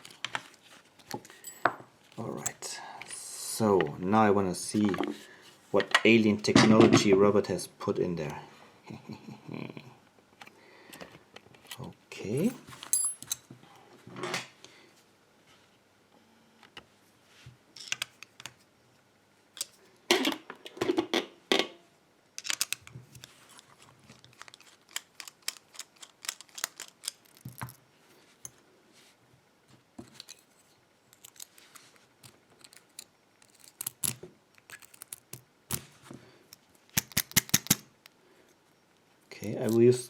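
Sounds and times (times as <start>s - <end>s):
padlock metal clicks and rattles: 22.4s - 22.9s, 24.1s - 27.8s, 32.2s - 35.4s, 36.9s - 37.8s.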